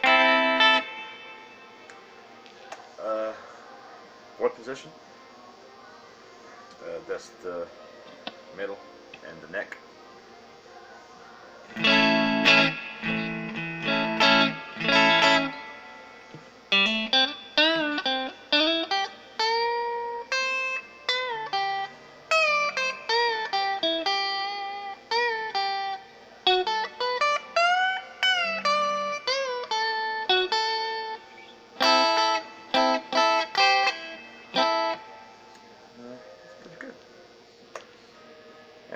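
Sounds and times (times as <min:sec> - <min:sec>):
electric guitar through an amp: 0:00.0 - 0:02.9, 0:11.6 - 0:35.8.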